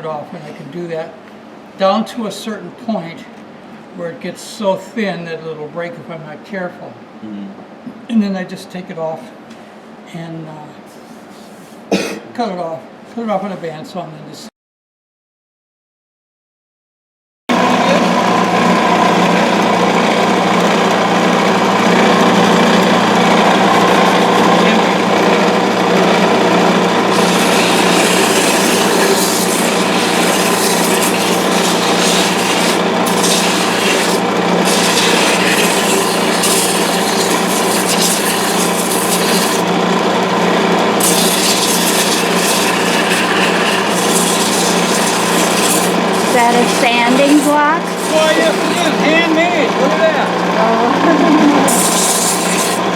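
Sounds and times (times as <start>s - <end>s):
tool scraping spinning wood: 17.5s - 52.9s
wood lathe motor hum: 17.5s - 52.9s.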